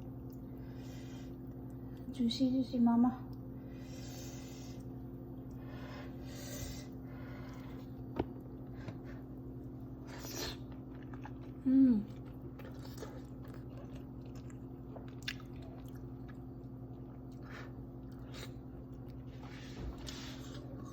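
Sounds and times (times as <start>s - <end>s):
steady low hum: 0.0s - 20.9s
person chewing food: 6.9s - 20.9s.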